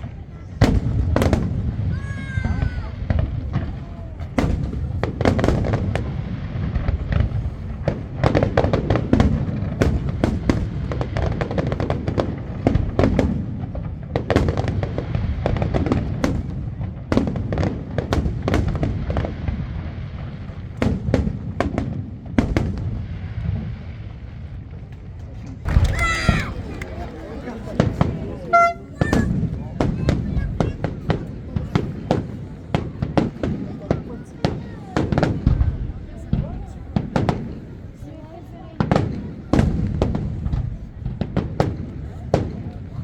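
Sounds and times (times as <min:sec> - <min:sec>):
deep rumble of booms: 0:00.6 - 0:27.0.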